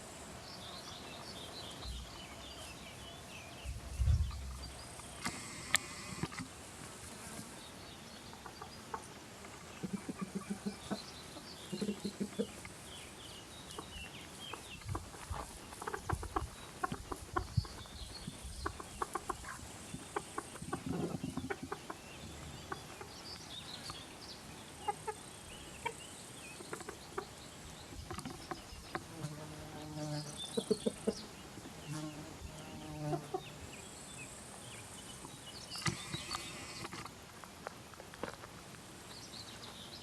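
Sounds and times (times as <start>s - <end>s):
light hiss: 3.9s - 7.9s, 31.9s - 39.8s
chickens clucking: 8.2s - 12.9s, 13.6s - 24.0s, 24.7s - 29.3s, 30.2s - 32.1s, 32.7s - 33.8s.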